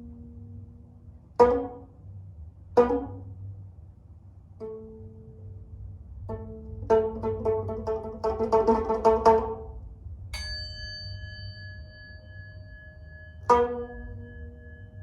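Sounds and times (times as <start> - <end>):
plucked string instrument: 0.0 - 2.0, 2.8 - 3.5, 4.6 - 5.6, 6.2 - 9.8, 13.4 - 15.0
bright metallic tone ringing: 10.4 - 15.0.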